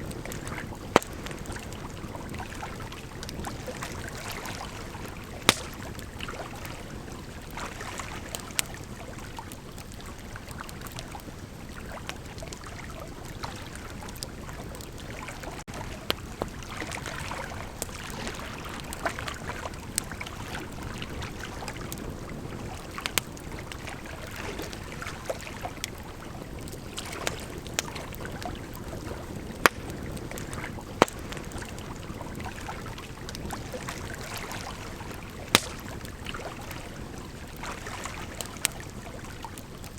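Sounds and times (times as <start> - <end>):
fire pops: 0.0 - 6.6, 22.8 - 23.8, 26.6 - 32.3, 33.2 - 36.5
bonfire hissing and crackling: 0.0 - 39.9.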